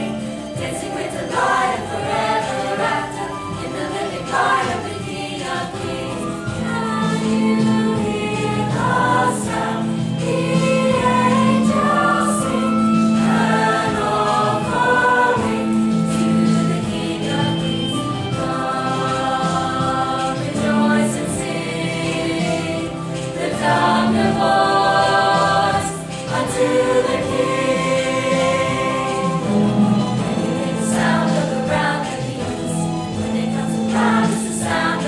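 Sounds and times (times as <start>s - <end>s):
choir singing: 0.0s - 35.0s.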